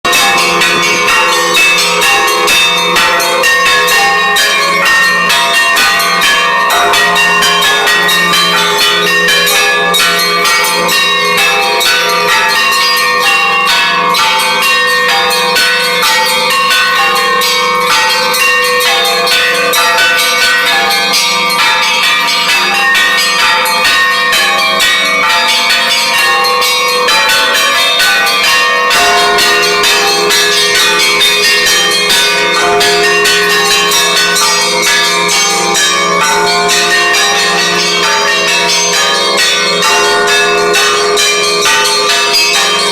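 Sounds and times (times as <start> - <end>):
church bells pealing: 0.0 - 42.9.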